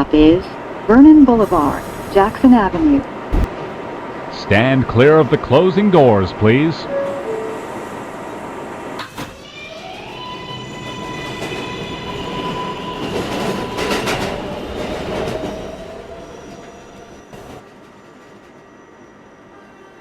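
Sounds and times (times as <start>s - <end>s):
train wheels clacking: 10.8s - 15.9s.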